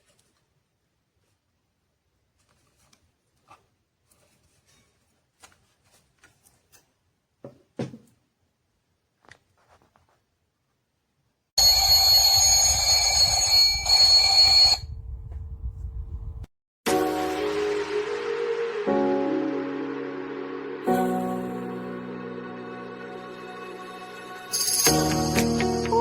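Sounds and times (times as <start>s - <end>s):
digital alarm clock ringing: 11.6s - 14.9s.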